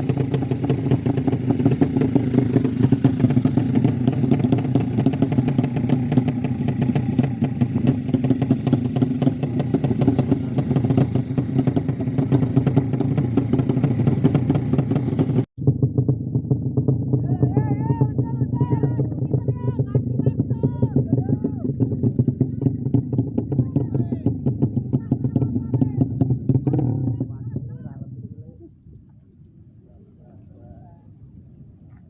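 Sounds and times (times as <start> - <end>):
motorcycle engine running: 0.0 - 28.2.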